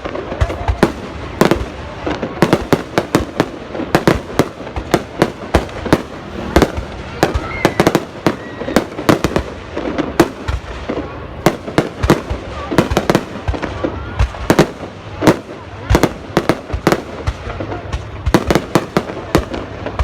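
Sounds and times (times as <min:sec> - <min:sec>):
distant fireworks rumble and crackle: 0:00.0 - 0:20.0
fireworks bangs and pops: 0:00.0 - 0:20.0.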